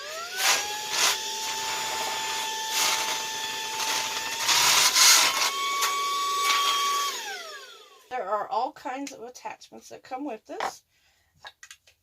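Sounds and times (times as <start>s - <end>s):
handheld vacuum motor whine: 0.0s - 8.1s.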